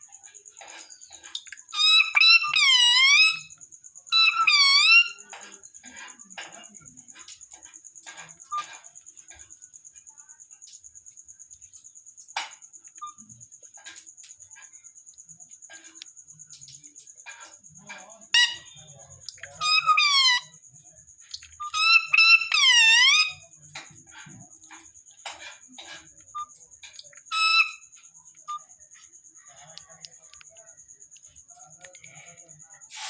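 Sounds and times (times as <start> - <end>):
parrot shrill calls: 1.4 - 5.2, 18.3 - 18.7, 19.4 - 20.5, 21.6 - 23.5, 27.3 - 27.9.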